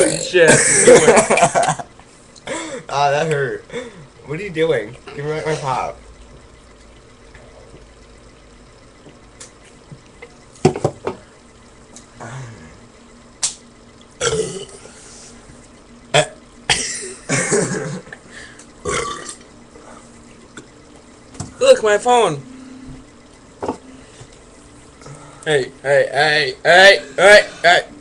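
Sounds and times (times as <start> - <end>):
person burping: 0.0 - 0.9, 14.2 - 14.8, 16.1 - 18.2, 18.8 - 19.4, 27.0 - 27.9.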